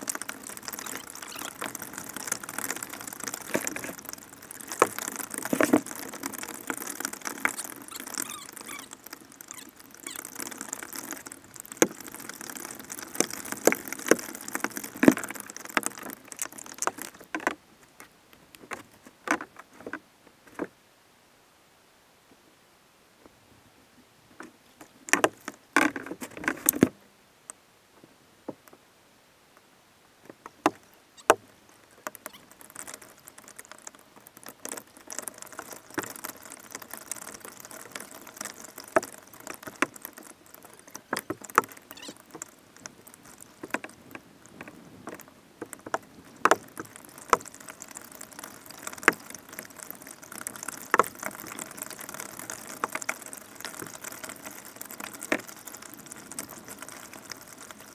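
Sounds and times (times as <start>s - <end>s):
water sloshing and splashing: 0.0s - 17.6s, 30.5s - 57.9s.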